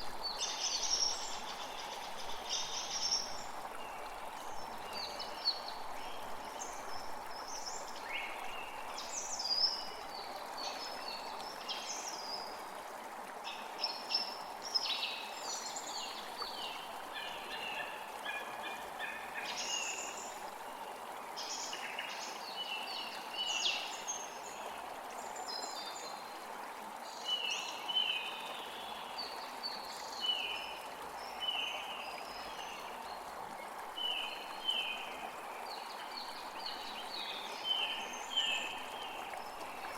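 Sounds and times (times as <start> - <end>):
creek water flowing: 0.0 - 39.9.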